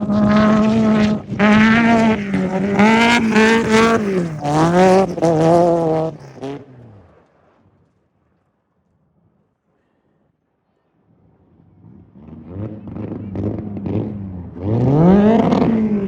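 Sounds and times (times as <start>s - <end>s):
race car engine revving: 0.0s - 7.2s, 11.8s - 16.0s.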